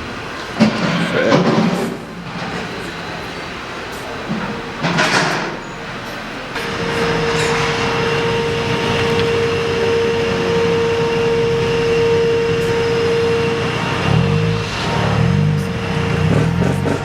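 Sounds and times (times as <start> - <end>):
machine whining: 0.0 - 17.0
noisy hum: 0.0 - 17.0.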